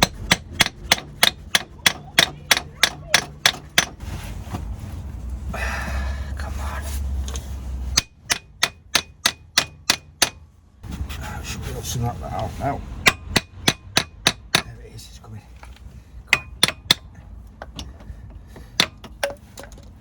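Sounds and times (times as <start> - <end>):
hammer striking metal: 0.0 - 4.0, 8.0 - 10.4, 13.0 - 14.8, 16.3 - 17.1, 18.8 - 19.4
rattling: 0.0 - 5.4, 7.2 - 10.6, 13.0 - 20.0.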